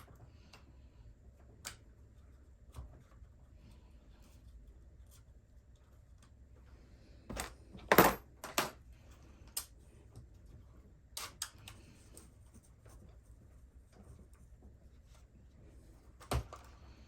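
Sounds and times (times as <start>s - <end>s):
small parts and tools clicking: 11.1s - 12.4s.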